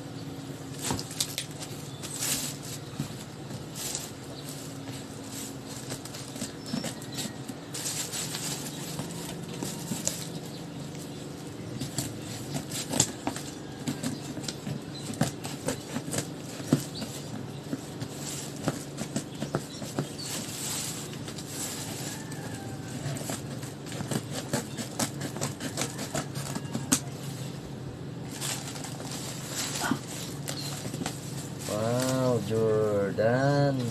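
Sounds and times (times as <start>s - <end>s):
steady low hum: 0.0s - 33.9s
packaging rustling and crinkling: 0.7s - 11.2s, 16.3s - 24.0s, 28.3s - 32.5s.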